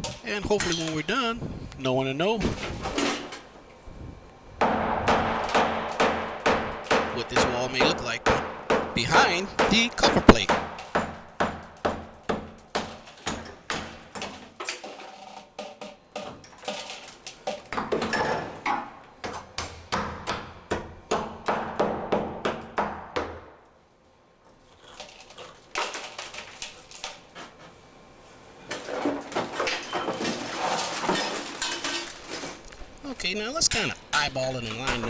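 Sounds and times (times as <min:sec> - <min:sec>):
hammer striking concrete: 0:04.6 - 0:14.4, 0:18.7 - 0:23.5.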